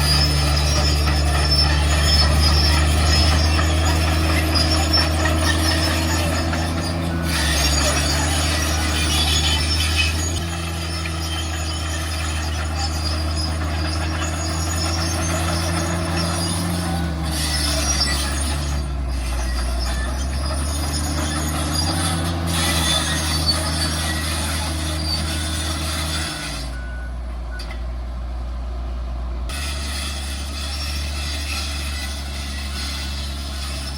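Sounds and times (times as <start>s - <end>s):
high squealing and rattling: 0.0s - 27.0s, 29.5s - 33.9s
diesel truck engine under load: 0.0s - 33.9s.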